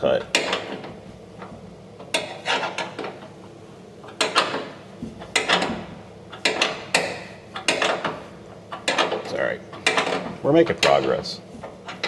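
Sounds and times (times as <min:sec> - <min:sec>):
hand tools clicking and clattering: 0:04.0 - 0:12.0.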